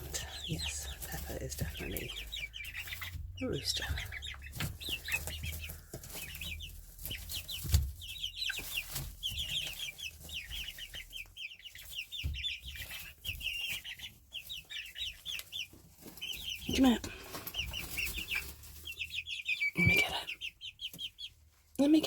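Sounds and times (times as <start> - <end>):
chicks cheeping: 0.0 - 22.0.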